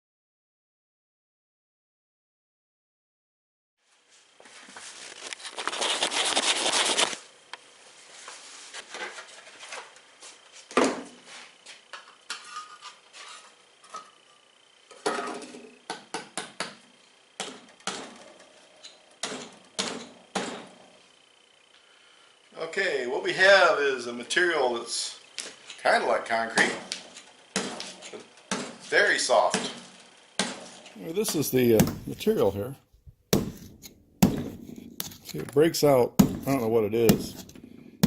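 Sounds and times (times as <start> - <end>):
metal tool scraping concrete: 12.3 - 14.2, 33.4 - 35.4, 36.3 - 37.8.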